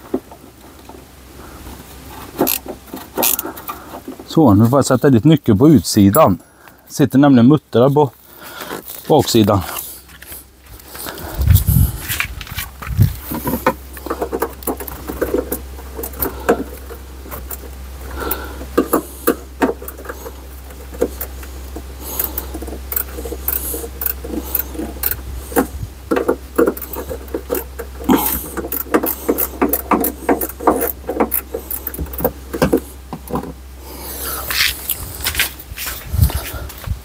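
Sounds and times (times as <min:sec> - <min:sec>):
steady low hum: 0:00.0 - 0:37.0
wrench clicking on bolts: 0:22.1 - 0:32.8.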